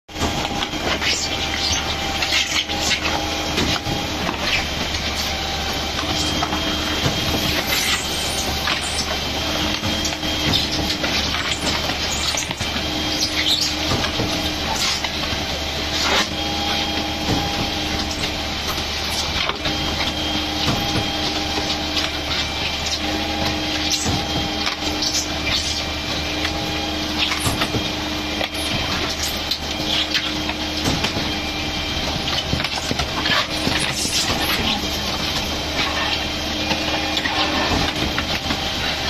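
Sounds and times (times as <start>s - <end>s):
concrete mixer pump running: 0.1s - 39.0s
machine hum: 0.1s - 39.0s
mechanical clanks and knocks: 16.0s - 39.0s.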